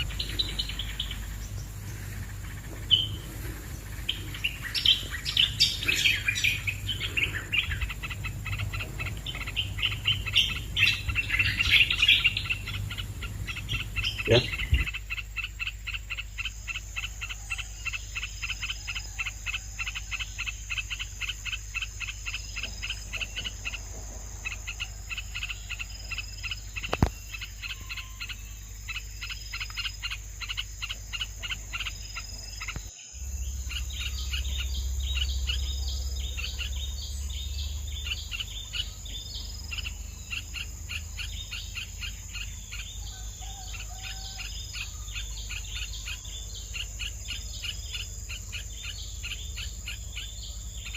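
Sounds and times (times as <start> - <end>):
insects chirping: 0.0 - 50.9.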